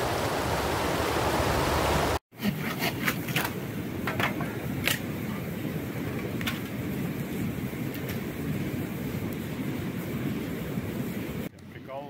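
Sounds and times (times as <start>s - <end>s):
rushing river water: 0.0s - 2.2s
campfire crackling and popping: 3.4s - 11.8s.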